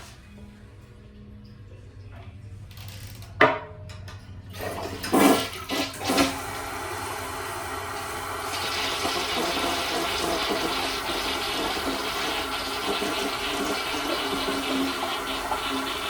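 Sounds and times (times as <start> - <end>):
toilet flush click: 4.6 - 16.0
toilet water gushing: 4.6 - 16.0.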